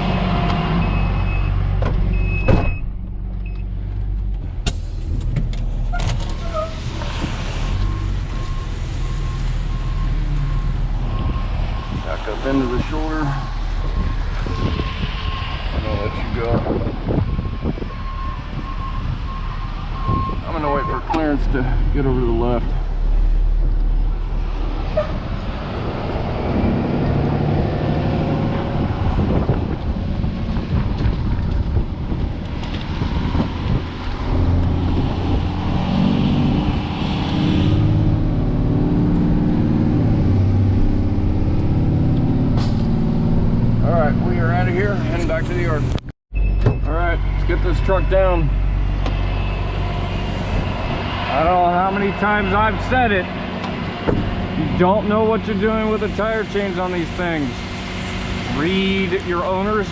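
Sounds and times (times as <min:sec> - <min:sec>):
road noise: 0:00.0 - 0:59.9
truck engine from inside cab: 0:00.0 - 0:59.9
loud thump: 0:01.8 - 0:03.0, 0:54.0 - 0:54.3.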